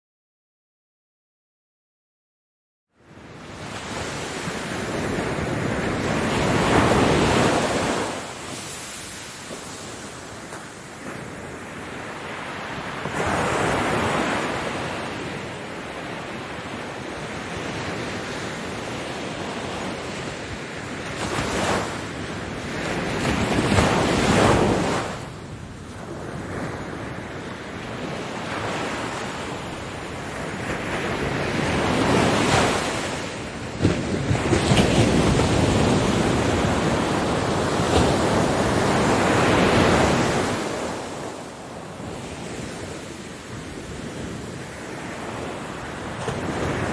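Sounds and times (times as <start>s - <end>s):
ocean waves breaking on beach: 3.0s - 46.9s.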